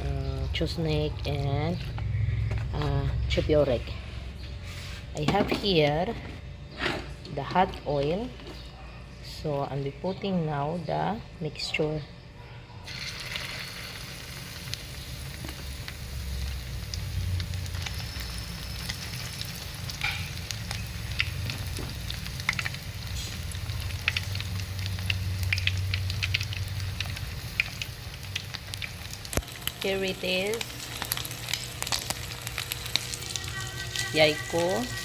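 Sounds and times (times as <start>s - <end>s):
omelette sizzling in a pan: 12.9s - 35.0s.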